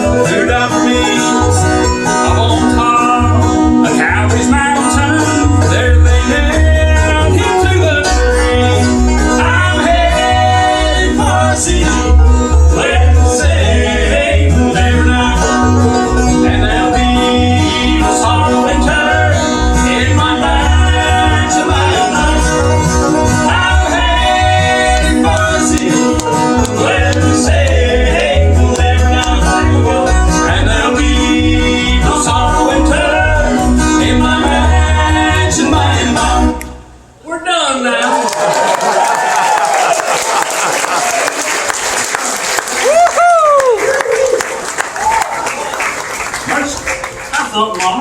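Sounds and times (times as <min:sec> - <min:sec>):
banjo: 0:00.0 - 0:36.6
bluegrass band playing: 0:00.0 - 0:38.0.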